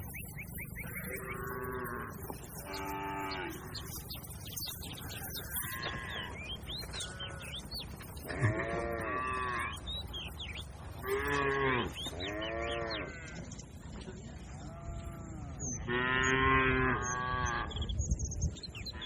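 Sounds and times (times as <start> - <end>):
cattle mooing: 0.8 - 4.0, 8.2 - 9.8, 11.0 - 13.4, 14.7 - 17.7.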